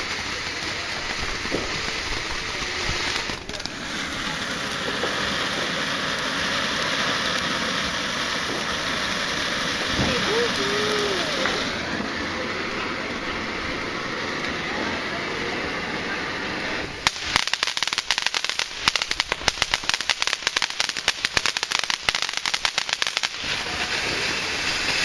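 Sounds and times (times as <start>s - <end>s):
firework crackling pops: 0.0s - 25.0s
firework fountain hissing: 0.0s - 25.0s.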